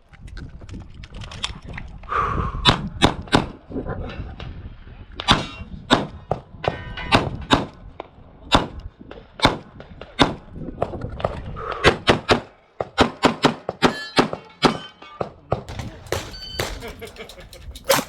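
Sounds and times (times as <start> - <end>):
pistol shots: 15.7 - 18.0.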